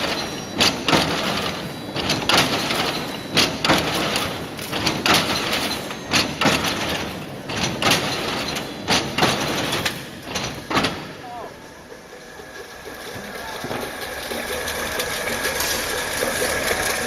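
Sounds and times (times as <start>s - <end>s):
sharp metallic clanks: 0.0s - 11.4s
machine mechanical clatter: 0.0s - 17.0s.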